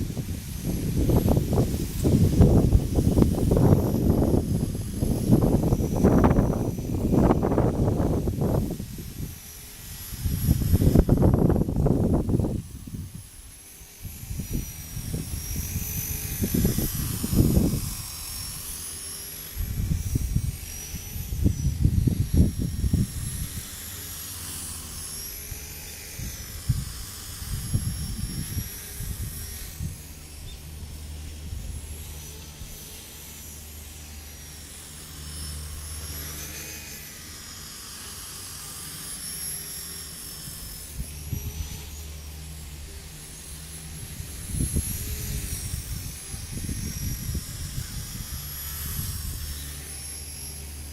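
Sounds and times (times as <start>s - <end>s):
wind buffeting microphone: 0.0s - 24.0s, 25.5s - 33.2s, 40.4s - 42.1s, 43.5s - 49.8s
rc helicopter rotor whine: 0.0s - 50.9s.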